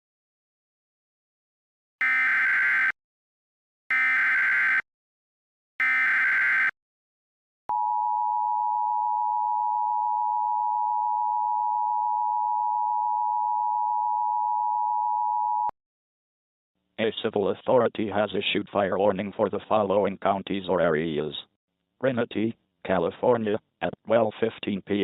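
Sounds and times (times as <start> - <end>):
buzzy digital data screech: 5.8 - 6.7.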